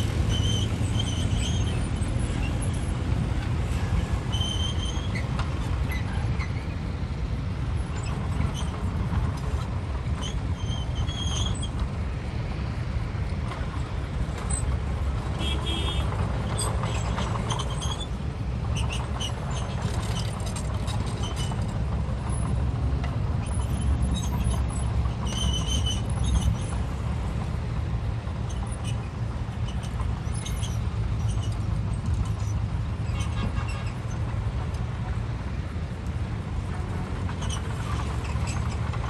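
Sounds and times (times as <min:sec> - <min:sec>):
diesel engine running under load: 0:00.0 - 0:39.0
metallic squeaks and clinks: 0:00.1 - 0:03.0, 0:03.8 - 0:06.8, 0:10.0 - 0:11.8, 0:15.4 - 0:18.2, 0:18.8 - 0:21.8, 0:23.4 - 0:26.8, 0:28.5 - 0:34.3, 0:36.7 - 0:39.0.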